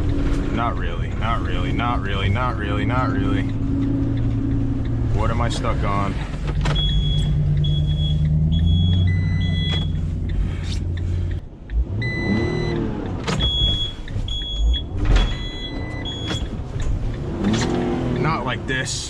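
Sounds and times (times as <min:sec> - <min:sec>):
van engine revving: 0:00.0 - 0:19.0
electronic warning chime beeping: 0:06.8 - 0:10.0, 0:13.5 - 0:16.5.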